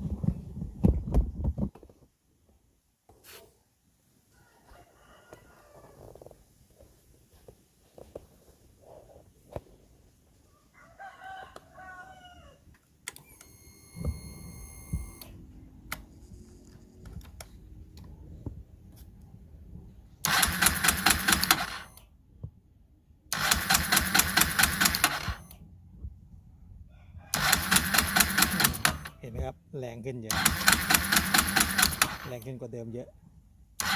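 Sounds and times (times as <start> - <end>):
fuel injector fast clicking: 20.3 - 21.8, 23.3 - 25.5, 27.4 - 29.1, 30.3 - 32.5.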